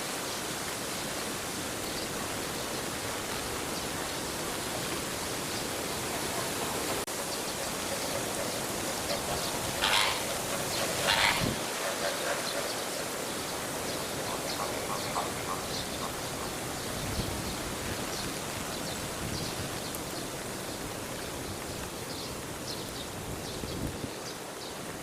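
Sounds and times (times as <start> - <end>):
steady rushing noise: 4.7 - 18.2.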